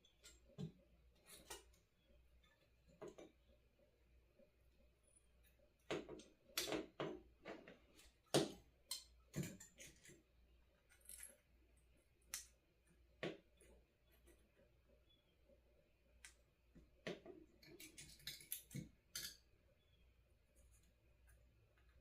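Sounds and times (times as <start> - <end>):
small hard parts clicking and tapping: 5.4 - 14.6, 16.1 - 19.6.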